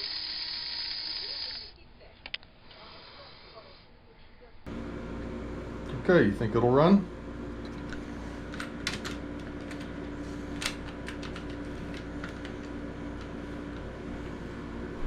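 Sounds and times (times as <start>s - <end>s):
model locomotive motor humming: 0.0s - 1.7s.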